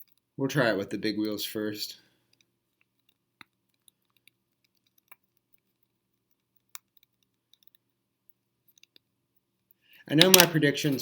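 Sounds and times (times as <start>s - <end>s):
small clicks of fingerboard parts: 10.2s - 10.5s.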